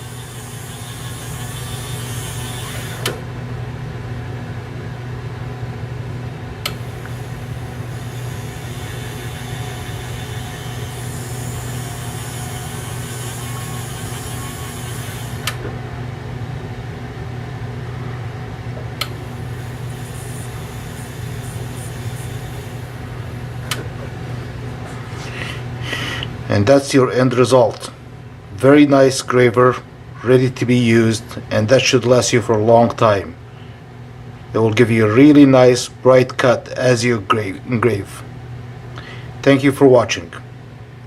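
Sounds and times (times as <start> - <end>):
sharpening machine motor humming: 0.0 - 3.4, 6.6 - 15.8, 19.0 - 24.5.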